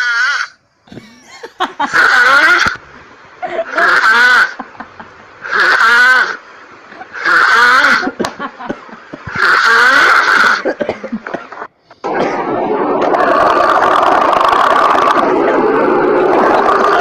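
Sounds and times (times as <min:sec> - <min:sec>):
man snoring loudly: 0:09.3 - 0:10.6.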